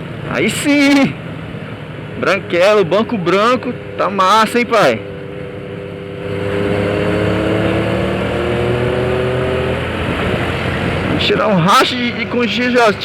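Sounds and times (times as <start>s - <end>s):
motorcycle engine accelerating: 0.0s - 13.0s
steady rush of noise: 9.8s - 13.0s.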